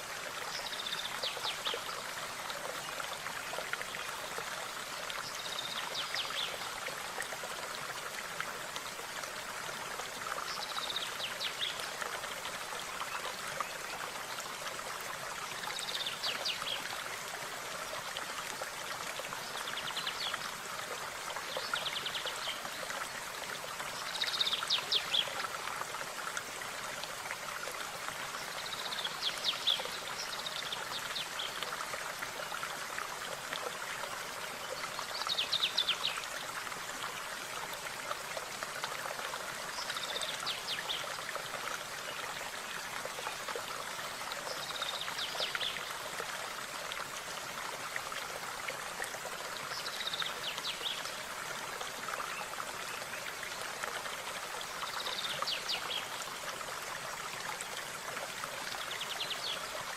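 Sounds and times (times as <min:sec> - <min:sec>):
small stream running: 0:00.0 - 0:59.9.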